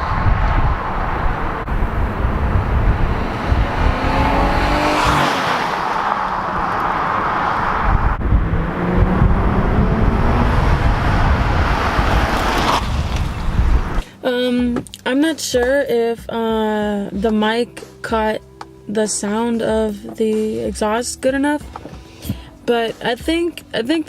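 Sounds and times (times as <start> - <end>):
car engine revving: 0.0 - 14.0
wind buffeting microphone: 0.0 - 14.0.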